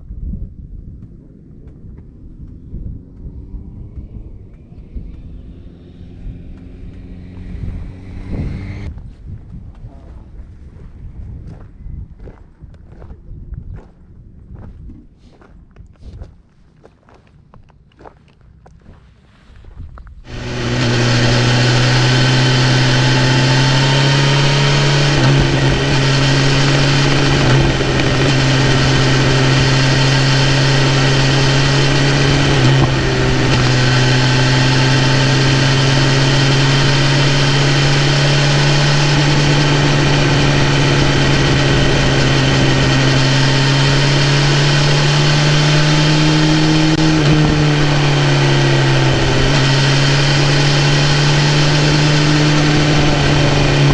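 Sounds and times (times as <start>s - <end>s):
motorcycle engine running: 0.1s - 9.0s, 20.2s - 53.9s.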